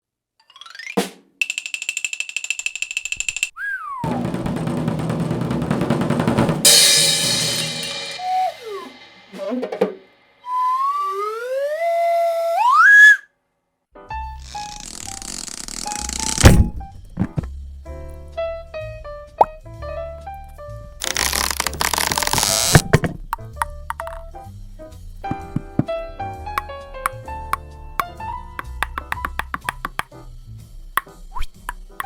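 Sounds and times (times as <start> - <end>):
slide whistle glides: 3.6 - 4.2, 8.2 - 9.5, 10.4 - 13.3
falling whistle: 3.6 - 4.3, 8.1 - 9.6, 10.4 - 13.3
drum roll: 4.0 - 10.0
cymbal crash: 6.7 - 9.4.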